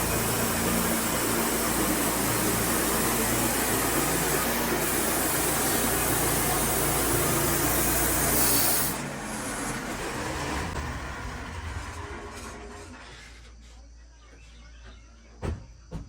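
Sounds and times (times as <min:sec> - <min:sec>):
band saw cutting log: 0:00.0 - 0:10.7
sawmill running: 0:00.0 - 0:13.0.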